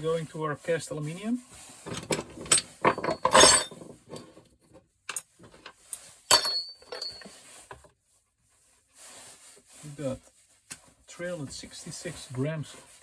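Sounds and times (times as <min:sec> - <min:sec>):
metal scrap clattering: 0:01.9 - 0:03.9, 0:06.3 - 0:07.3.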